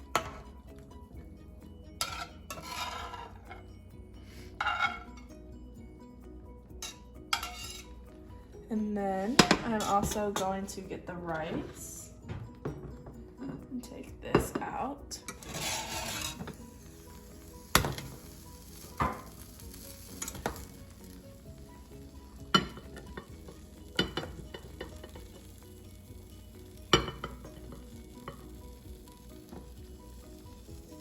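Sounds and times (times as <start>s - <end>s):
faint background music: 0.0s - 31.0s
spoon scraping rice pot: 2.0s - 3.6s, 4.6s - 5.2s, 6.8s - 8.0s, 15.3s - 16.6s.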